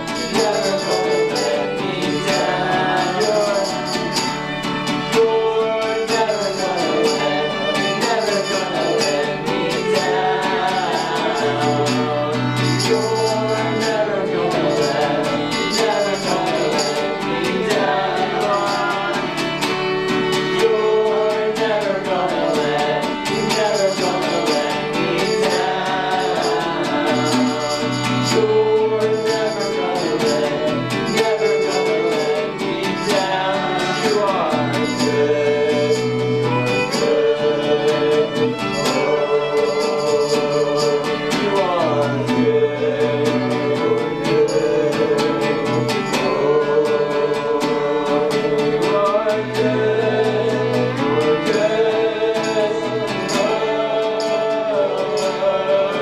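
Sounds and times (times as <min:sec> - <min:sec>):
high percussion beat: 0:00.0 - 0:42.8
guitar: 0:00.0 - 0:56.0
voices singing: 0:00.0 - 0:56.0.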